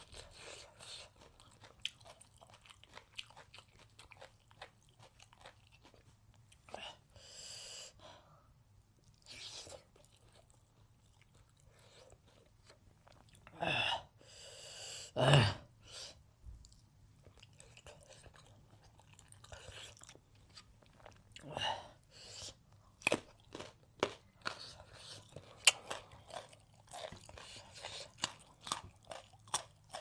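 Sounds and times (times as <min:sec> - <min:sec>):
chewing and crunching food: 0:00.0 - 0:06.8, 0:09.0 - 0:13.6, 0:16.6 - 0:21.6, 0:22.4 - 0:30.0.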